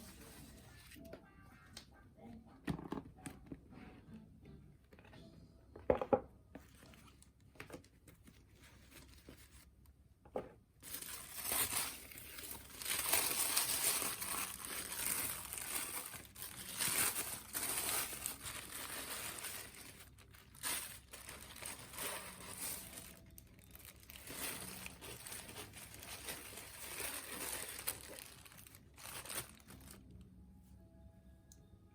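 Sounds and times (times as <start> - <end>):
packaging paper rustling: 10.8 - 30.0.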